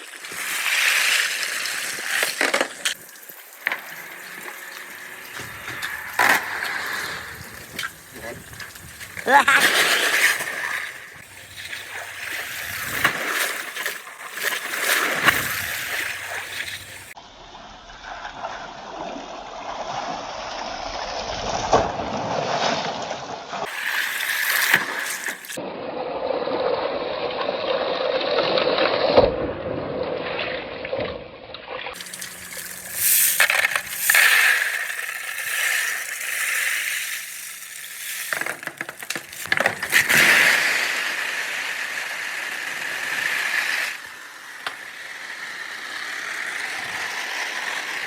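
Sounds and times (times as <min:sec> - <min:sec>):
marbles clicking on track: 0:32.0 - 0:47.3
marbles rolling on tracks: 0:32.0 - 0:48.0.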